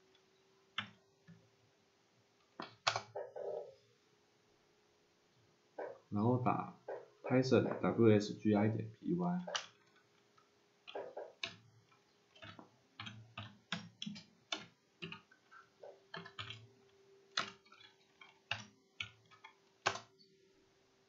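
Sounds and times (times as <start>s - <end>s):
faint steady hum: 0.0s - 21.0s
typing on computer keyboard: 2.6s - 3.6s, 10.9s - 16.7s, 17.3s - 20.1s.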